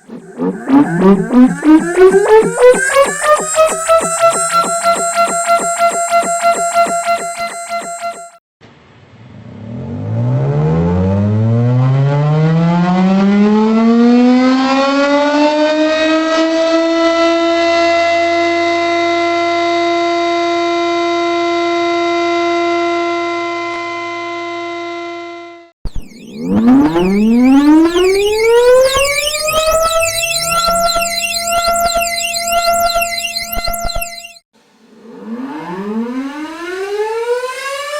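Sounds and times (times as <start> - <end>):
crackling distortion: 0.0 - 8.2, 25.9 - 34.4
lower siren tone: 0.0 - 8.4, 9.3 - 25.3, 25.9 - 37.9
sweeping high tones: 0.0 - 8.4, 26.0 - 34.4
tornado siren wailing: 0.0 - 8.4, 25.9 - 37.9.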